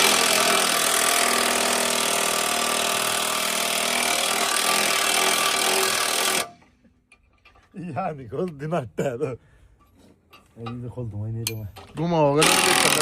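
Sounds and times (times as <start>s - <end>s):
power tool running: 0.0s - 6.6s, 12.4s - 13.0s.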